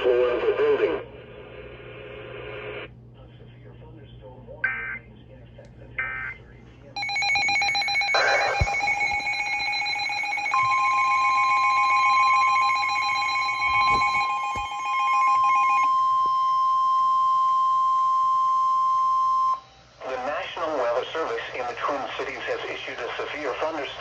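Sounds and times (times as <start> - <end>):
steady alarm tone: 7.0 - 20.0.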